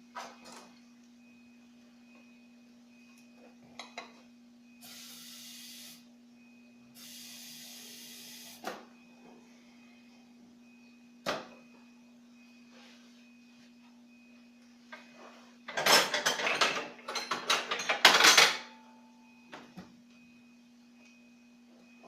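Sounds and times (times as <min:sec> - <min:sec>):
steady low hum: 0:00.0 - 0:15.7, 0:18.7 - 0:22.0.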